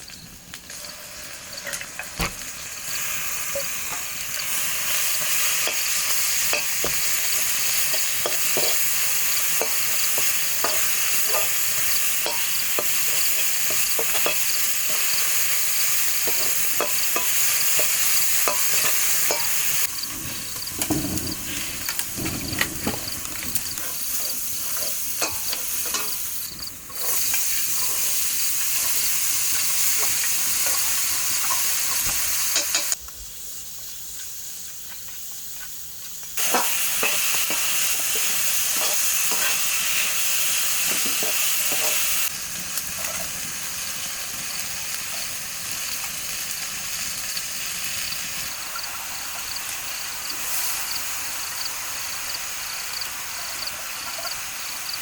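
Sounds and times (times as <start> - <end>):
food sizzling in a pan: 0.0 - 55.0
spoon scraping a pan: 2.9 - 33.0, 36.4 - 42.3.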